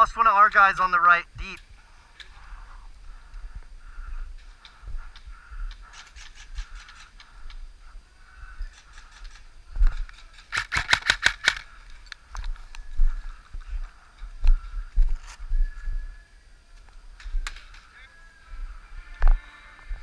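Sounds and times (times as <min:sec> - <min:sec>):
wind rumble on microphone: 0:01.3 - 0:10.3, 0:11.7 - 0:17.8, 0:18.4 - 0:20.0
airsoft guns firing rapid shots: 0:10.3 - 0:11.7.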